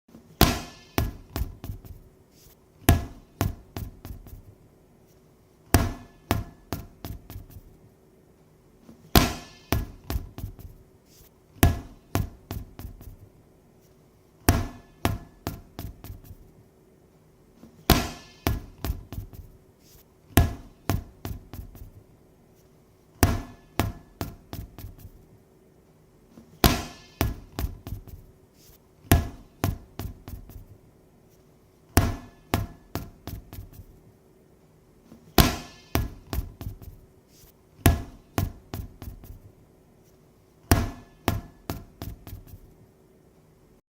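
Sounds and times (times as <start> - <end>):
ball bouncing: 0.4 - 2.1, 2.8 - 4.5, 5.7 - 7.8, 9.2 - 10.8, 11.6 - 13.2, 14.5 - 16.5, 17.9 - 19.6, 20.4 - 22.0, 23.2 - 25.2, 26.6 - 28.3, 29.1 - 30.7, 32.0 - 34.0, 35.4 - 37.0, 37.8 - 39.4, 40.7 - 42.7.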